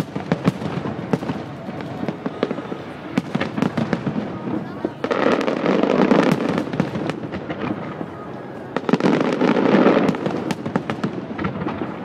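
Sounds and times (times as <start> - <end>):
fireworks crackling and banging: 0.0 - 12.0.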